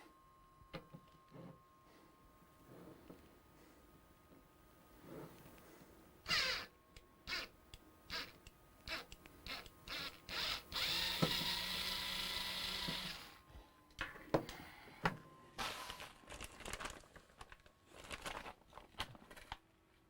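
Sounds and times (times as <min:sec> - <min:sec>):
small motor running: 0:08.9 - 0:13.4.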